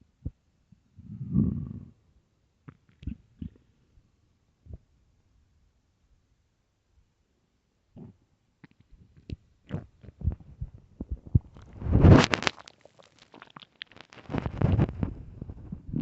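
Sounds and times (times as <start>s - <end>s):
stomach growling and gurgling: 1.0s - 2.0s, 2.7s - 3.7s, 7.9s - 16.0s.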